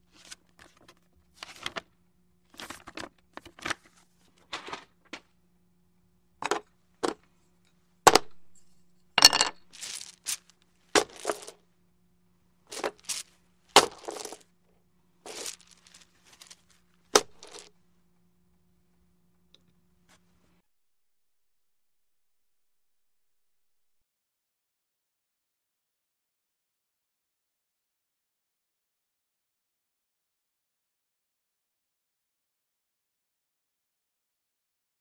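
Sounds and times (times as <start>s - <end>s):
game pieces clacking and clinking: 9.2s - 11.5s, 12.7s - 14.4s, 15.3s - 16.6s, 17.2s - 17.7s.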